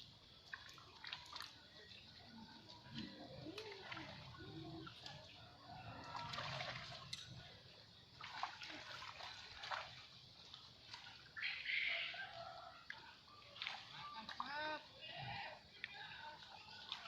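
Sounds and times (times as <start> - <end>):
water splashing and sloshing: 0.0 - 17.0.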